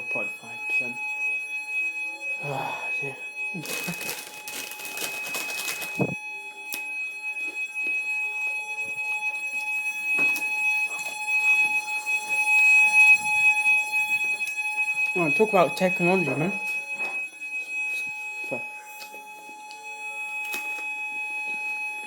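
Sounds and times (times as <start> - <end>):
fire alarm high-pitched tone: 0.0 - 22.0
rustling: 3.6 - 6.2.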